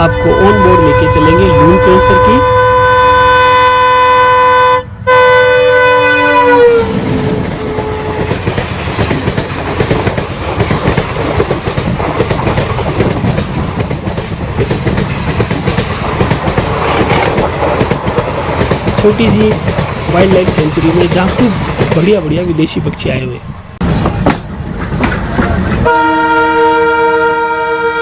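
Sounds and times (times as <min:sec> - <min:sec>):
diesel locomotive horn blasts: 0:00.0 - 0:08.5, 0:25.8 - 0:28.0
train rumbling by: 0:00.0 - 0:28.0
wheels clattering over rail joints: 0:07.0 - 0:22.5.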